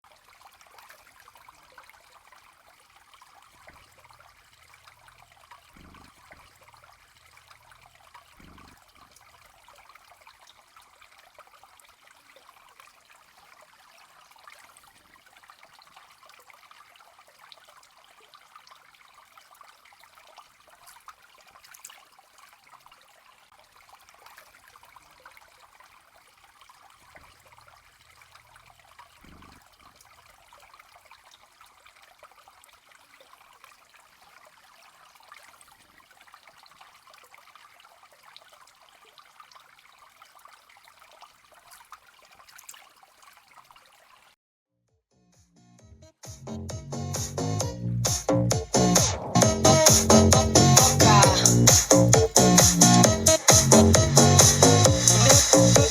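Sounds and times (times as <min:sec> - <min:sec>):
faint trickling water: 0:00.0 - 0:44.4.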